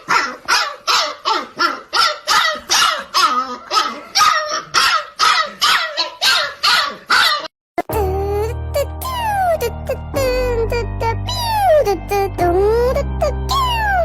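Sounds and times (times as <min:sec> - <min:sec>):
puppy barking: 0:00.0 - 0:07.5.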